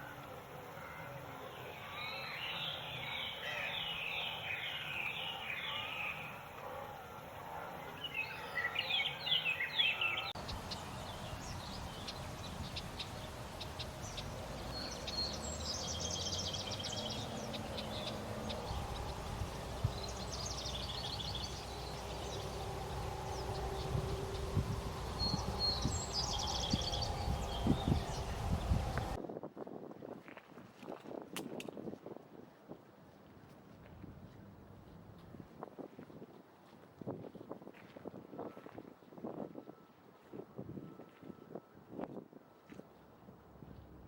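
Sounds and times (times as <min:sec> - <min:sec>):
birds chirping: 0:07.5 - 0:29.2.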